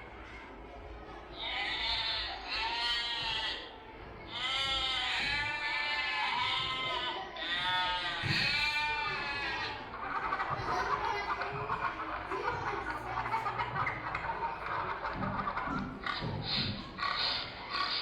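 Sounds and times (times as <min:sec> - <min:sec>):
livestock bleating: 0:01.4 - 0:03.7, 0:04.3 - 0:09.8.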